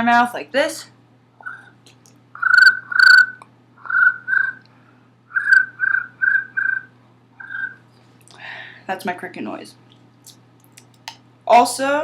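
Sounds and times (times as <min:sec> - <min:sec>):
mouth imitating cricket chirps: 0:02.4 - 0:04.6, 0:05.3 - 0:07.8.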